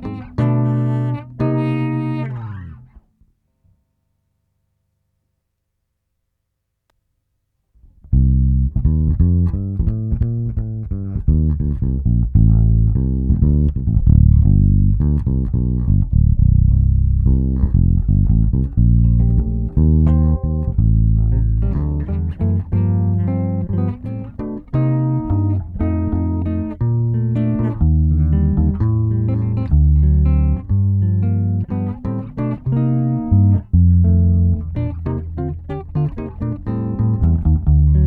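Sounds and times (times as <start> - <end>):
electric bass guitar plucking: 0.0 - 3.0, 8.0 - 38.0.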